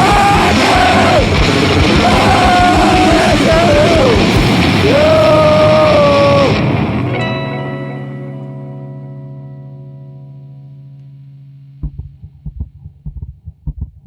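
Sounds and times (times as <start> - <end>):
person yelling vocals: 0.0 - 6.6
rock band playing loud: 0.0 - 9.5.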